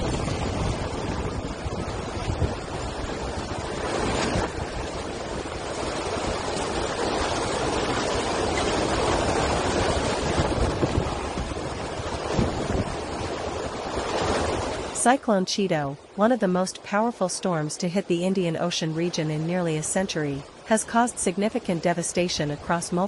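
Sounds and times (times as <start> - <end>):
storm wind gusting: 0.0 - 16.2.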